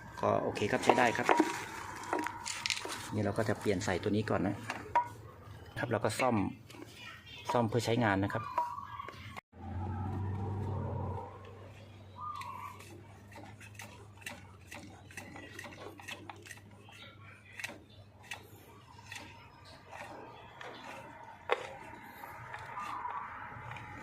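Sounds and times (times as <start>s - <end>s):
tools and parts clicking: 0.8s - 3.1s
warbling bird calls: 6.7s - 9.4s, 11.7s - 13.5s, 16.7s - 24.0s.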